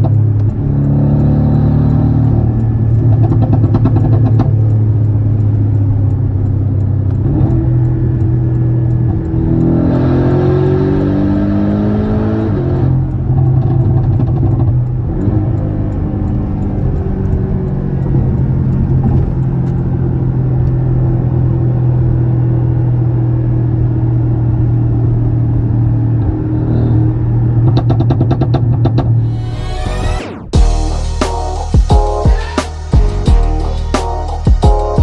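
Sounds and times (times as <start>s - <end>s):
exhaust crackles: 0.0s - 10.8s, 12.9s - 35.0s
car engine revving: 0.0s - 35.0s.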